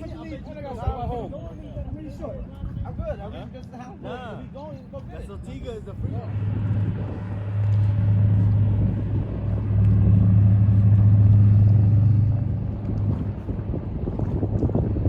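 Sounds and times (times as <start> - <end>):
motor drone passing by: 5.9 - 15.0.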